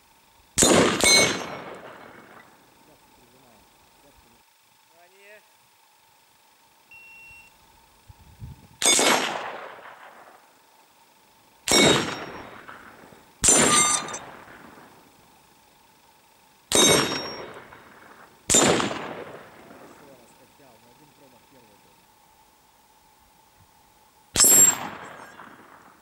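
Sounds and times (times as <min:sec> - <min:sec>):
rifle shots: 0:00.6 - 0:02.5, 0:08.8 - 0:10.5, 0:11.7 - 0:14.9, 0:16.7 - 0:20.2, 0:24.4 - 0:26.0.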